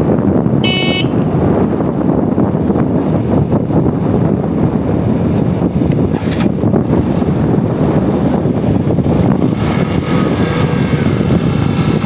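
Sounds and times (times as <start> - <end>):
wind rushing on microphone: 0.0 - 12.0
tyre and road rumble: 3.8 - 12.0.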